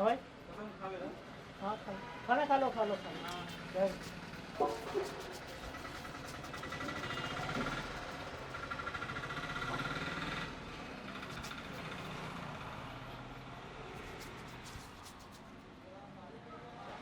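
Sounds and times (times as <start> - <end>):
road traffic rumble: 0.1 - 15.8
vehicle engine running close by: 2.7 - 15.4.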